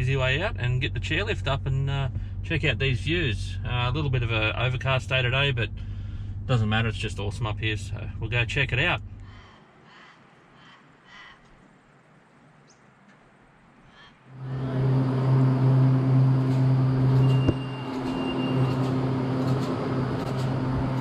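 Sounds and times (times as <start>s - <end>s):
faint high whine: 14.2s - 21.0s
chairlift machinery humming: 14.3s - 21.0s.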